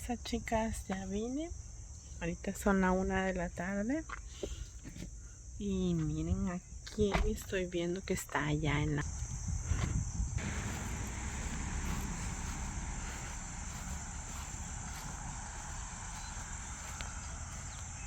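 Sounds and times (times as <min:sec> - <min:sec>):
insect chorus trilling: 0:00.0 - 0:18.0
low rumble: 0:09.0 - 0:18.0.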